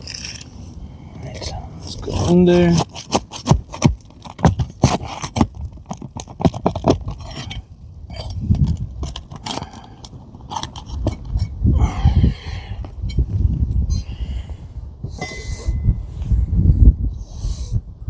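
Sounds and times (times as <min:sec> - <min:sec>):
roof shingle scraping and clicking: 0:00.0 - 0:00.7, 0:01.3 - 0:11.6.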